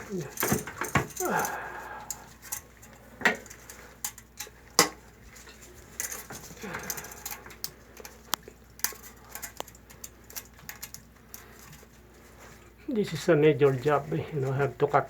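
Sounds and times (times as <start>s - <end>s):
metal clamps and tools clicking: 0.0s - 11.9s.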